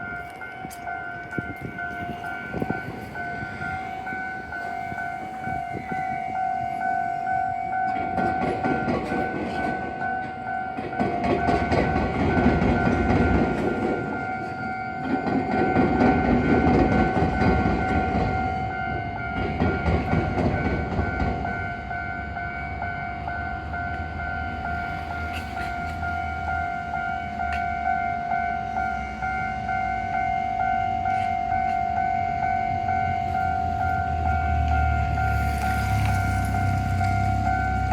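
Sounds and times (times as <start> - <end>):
level-crossing warning bell ringing: 0.0 - 37.9
train wheels clattering over rail joints: 7.9 - 18.6, 19.2 - 21.7.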